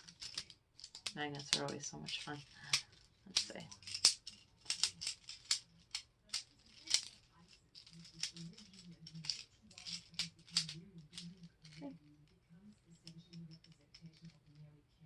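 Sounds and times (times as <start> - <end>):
plastic magnetic tiles clicking: 0.1 - 7.2, 7.8 - 11.9.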